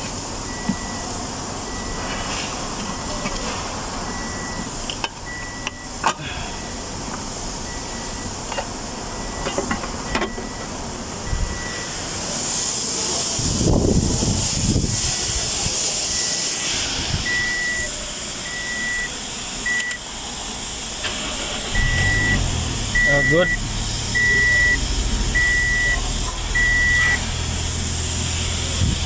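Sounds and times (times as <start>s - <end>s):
car engine starting: 0.0s - 29.0s
steady hiss: 0.0s - 29.0s
car chime beeping: 0.4s - 2.0s, 4.0s - 7.0s, 7.6s - 12.0s, 17.3s - 20.1s, 21.0s - 27.2s.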